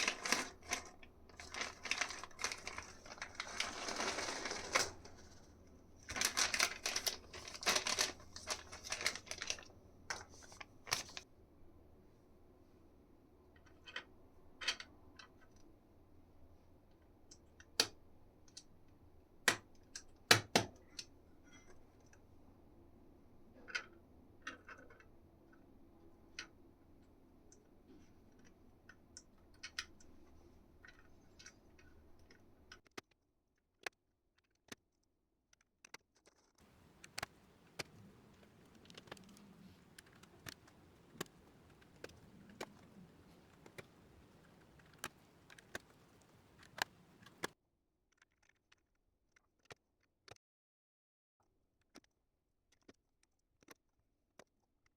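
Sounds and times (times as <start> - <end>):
small clicks and taps of keyboard parts: 36.7 - 47.6.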